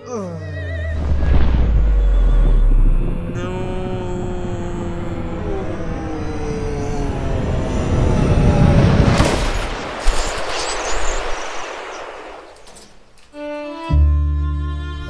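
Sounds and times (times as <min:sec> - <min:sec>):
dense film music swell with sharp hit: 0:01.0 - 0:03.6.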